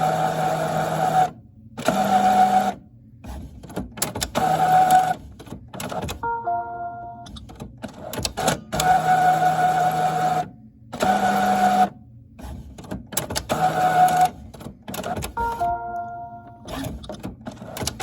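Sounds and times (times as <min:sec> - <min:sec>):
printer motors whirring: 0:00.0 - 0:06.2, 0:07.3 - 0:15.7, 0:16.5 - 0:18.0
printer clicks and clunks: 0:01.8 - 0:06.4, 0:07.2 - 0:09.6, 0:11.0 - 0:18.0.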